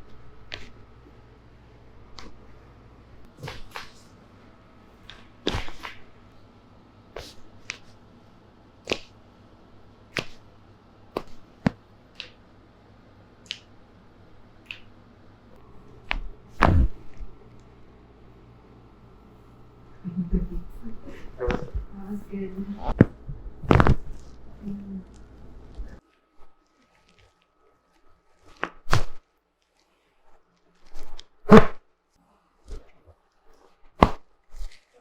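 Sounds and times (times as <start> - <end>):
heavy thump: 16.1 - 17.3.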